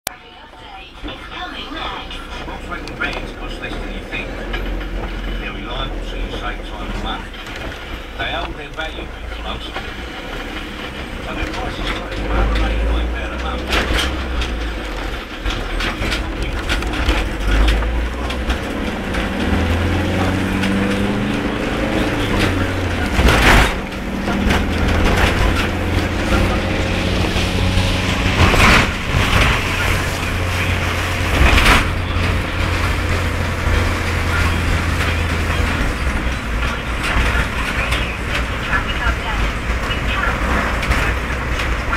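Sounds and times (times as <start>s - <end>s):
engine and tyres humming: 0.0s - 41.9s.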